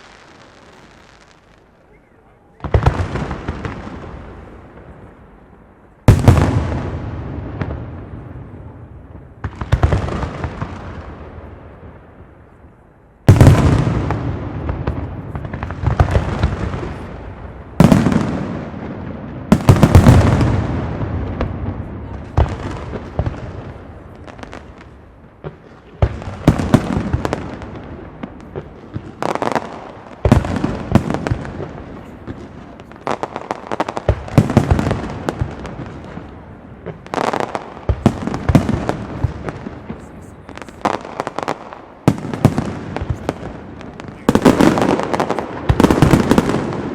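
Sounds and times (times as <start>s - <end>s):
sharp firework cracks: 0.0s - 1.7s, 13.3s - 46.9s.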